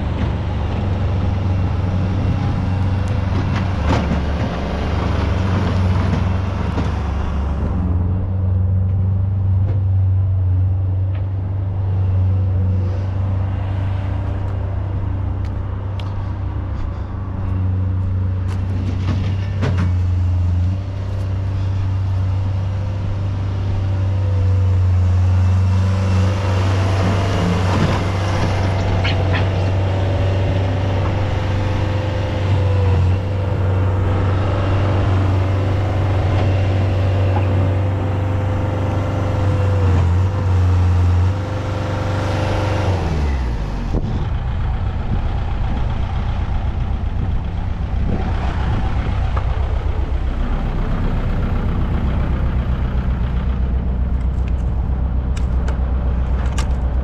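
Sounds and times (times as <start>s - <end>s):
diesel engine running: 0.0s - 57.0s
knocks and clatters: 3.1s - 7.8s, 18.4s - 20.2s.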